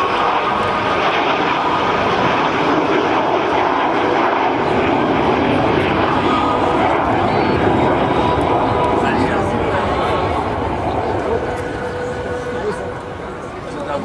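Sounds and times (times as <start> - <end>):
jet aircraft roar: 0.0 - 14.0
faint high whine: 5.9 - 14.0.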